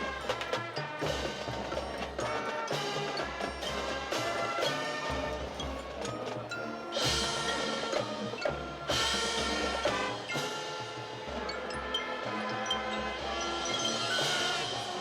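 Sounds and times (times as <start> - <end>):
mallet percussion: 0.0 - 15.0
marching band playing: 0.0 - 15.0.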